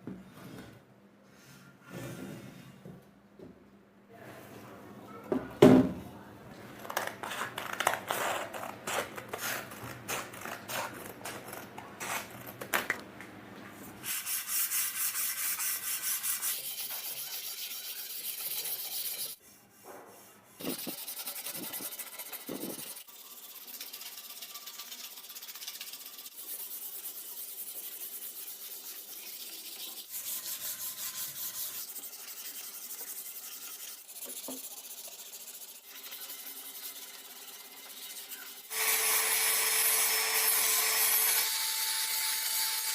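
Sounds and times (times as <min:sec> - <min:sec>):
sanding paint off metal: 0:14.0 - 0:38.7.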